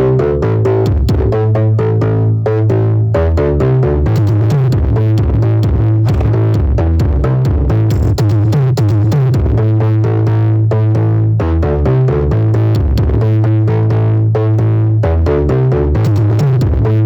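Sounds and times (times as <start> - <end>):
electronic dance music: 6.0 - 6.7.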